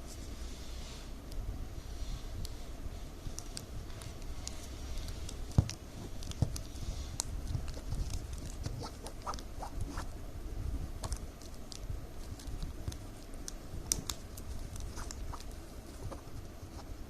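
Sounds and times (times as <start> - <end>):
low steady hum: 0.0 - 17.0
plastic strips crinkling and clicking: 3.3 - 10.0, 11.0 - 16.8.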